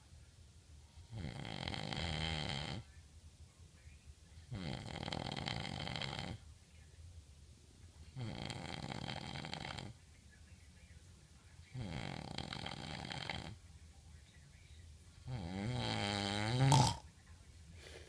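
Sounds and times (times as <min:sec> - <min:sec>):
quiet breaths: 0:00.0 - 0:18.0
man snoring: 0:01.0 - 0:02.8, 0:04.5 - 0:06.4, 0:08.2 - 0:09.9, 0:11.8 - 0:13.6, 0:15.2 - 0:17.0.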